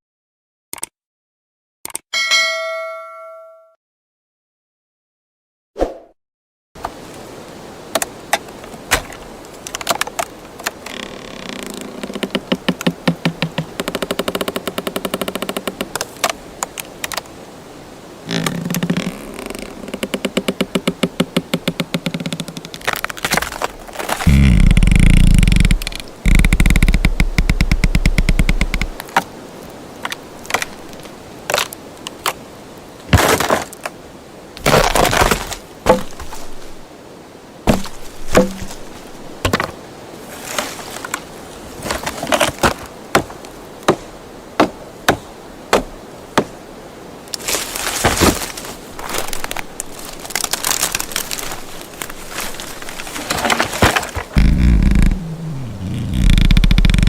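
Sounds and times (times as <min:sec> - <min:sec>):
wood snapping and cracking: 0:08.0 - 0:17.3, 0:18.3 - 0:29.3, 0:30.0 - 0:32.4, 0:34.6 - 0:36.8, 0:37.7 - 0:39.7, 0:47.4 - 0:57.0
wood crunching: 0:08.9 - 0:17.2, 0:18.3 - 0:29.2, 0:30.0 - 0:31.8, 0:33.1 - 0:33.9, 0:34.6 - 0:36.9, 0:37.7 - 0:46.5, 0:47.3 - 0:57.0.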